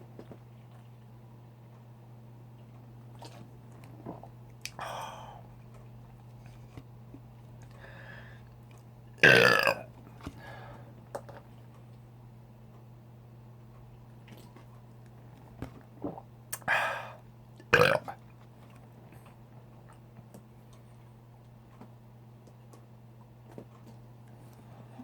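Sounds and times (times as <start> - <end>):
person burping: 9.2 - 9.9, 17.7 - 18.2.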